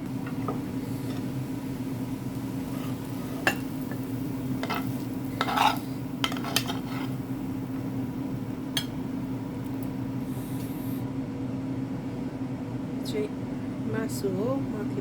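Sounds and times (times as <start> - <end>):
utensil scraping a pan: 0.3 - 1.4, 2.6 - 7.4.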